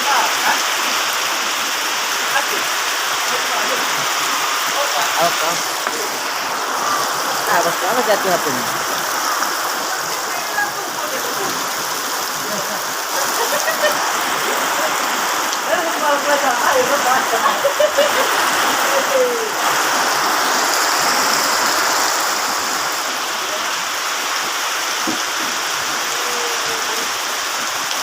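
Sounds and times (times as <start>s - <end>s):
heavy rain pouring: 0.0s - 28.0s
indistinct voices: 2.3s - 21.0s.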